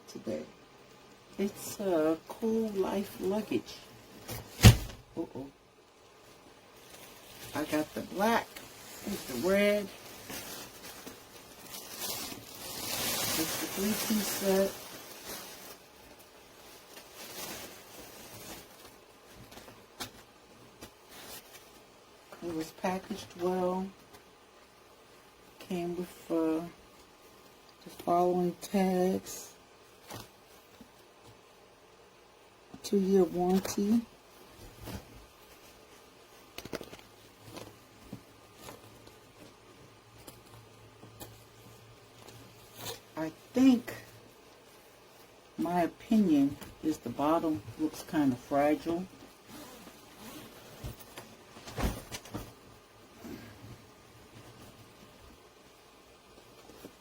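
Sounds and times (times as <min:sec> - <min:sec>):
suitcase packaging rustling: 0:06.8 - 0:21.9, 0:48.3 - 0:52.8.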